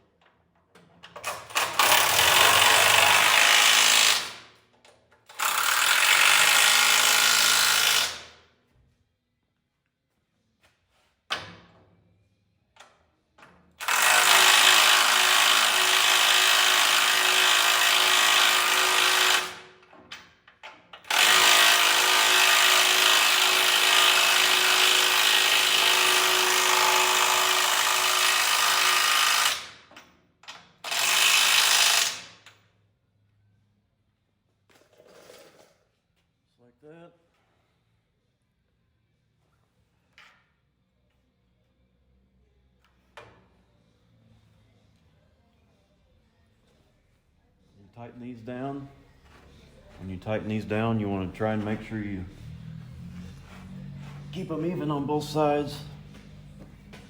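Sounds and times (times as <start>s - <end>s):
handheld power tool running: 1.5s - 4.4s, 5.3s - 8.2s, 13.8s - 19.6s, 21.1s - 29.8s, 30.8s - 32.3s.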